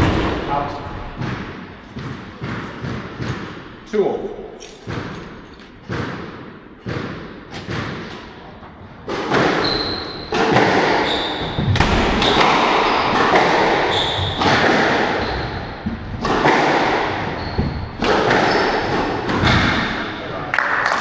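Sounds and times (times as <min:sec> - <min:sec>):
squash ball hitting rackets and walls: 0:00.0 - 0:21.0
shoes squeaking on court floor: 0:01.6 - 0:06.1, 0:09.3 - 0:11.7, 0:12.3 - 0:20.3.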